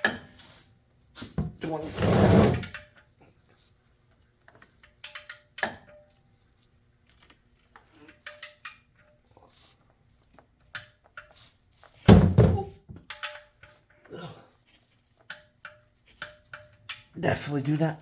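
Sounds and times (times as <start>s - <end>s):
hand tools clicking on metal: 4.8s - 6.0s, 7.7s - 8.9s
heavy thunk: 12.1s - 12.8s.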